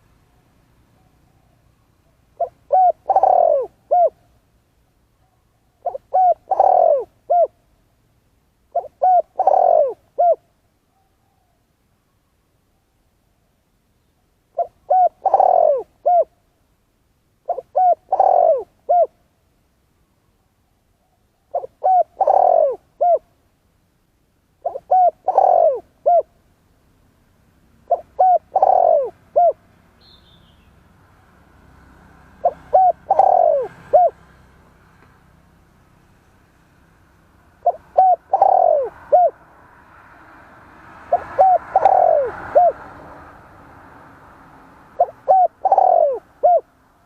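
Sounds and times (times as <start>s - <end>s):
dove cooing: 0.9s - 4.3s, 5.2s - 7.6s, 8.7s - 11.6s, 14.5s - 16.4s, 17.4s - 19.2s, 21.4s - 23.3s, 24.6s - 26.4s, 27.9s - 29.6s, 32.3s - 34.4s, 37.5s - 39.4s, 41.0s - 43.3s, 44.9s - 46.8s.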